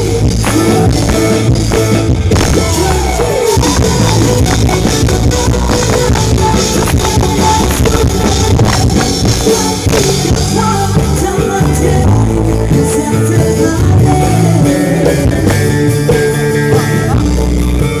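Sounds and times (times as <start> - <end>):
loud music with drums and singing: 0.0 - 18.0.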